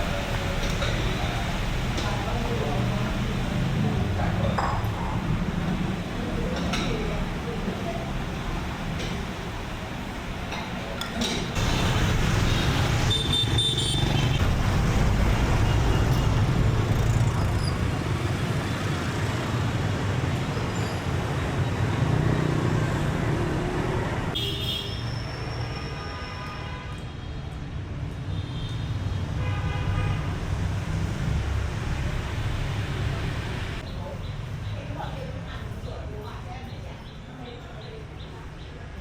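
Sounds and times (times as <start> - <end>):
car engines passing: 0.0 - 24.4, 30.2 - 36.6.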